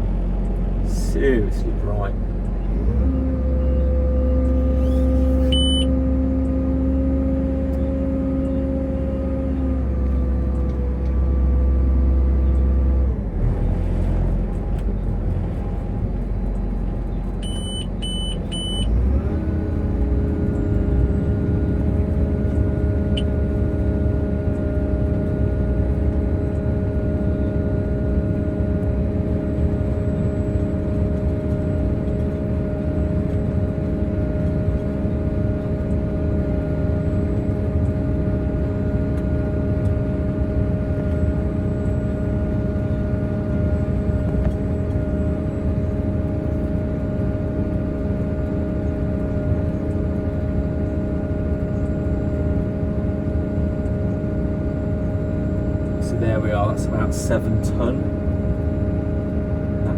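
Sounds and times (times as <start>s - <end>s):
harvester machine running: 0.0s - 59.9s
short electronic beeps: 3.7s - 5.9s, 17.4s - 18.9s.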